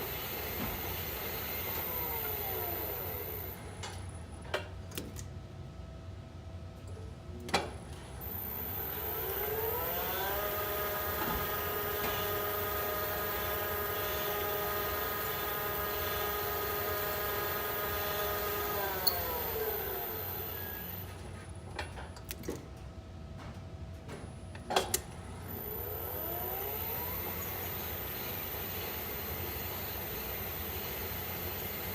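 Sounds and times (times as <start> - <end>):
electric motor whining: 0.0 - 3.6, 8.2 - 21.1, 25.4 - 31.9.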